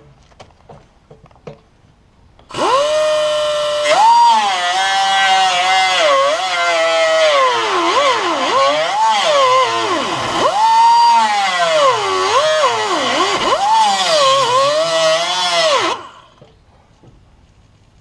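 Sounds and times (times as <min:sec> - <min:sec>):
power cutting tool cutting sheet steel: 0:02.5 - 0:16.3.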